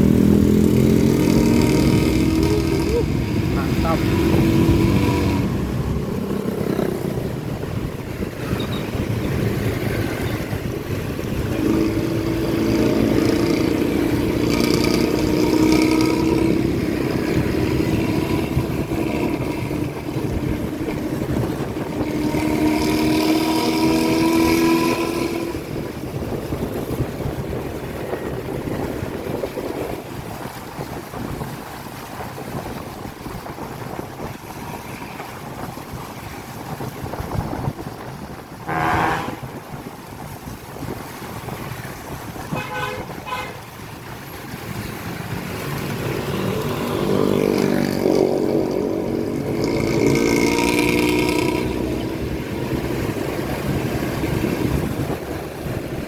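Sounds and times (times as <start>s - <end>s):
diesel bus engine revving: 0.0s - 8.0s, 45.6s - 56.0s.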